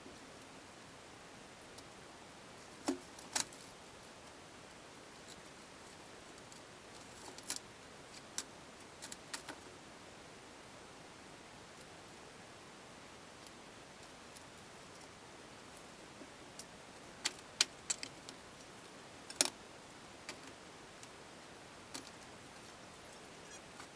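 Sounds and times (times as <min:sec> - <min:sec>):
steady hiss: 0:00.0 - 0:23.9
sharp clicks and light knocks: 0:16.6 - 0:18.7, 0:19.3 - 0:19.6, 0:21.9 - 0:23.9.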